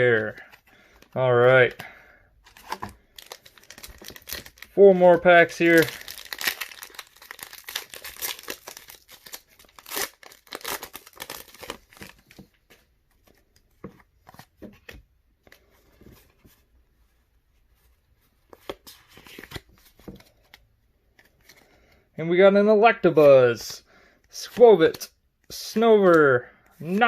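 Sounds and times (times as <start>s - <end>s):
foil wrapper tearing and crinkling: 2.6s - 4.7s, 5.5s - 12.1s.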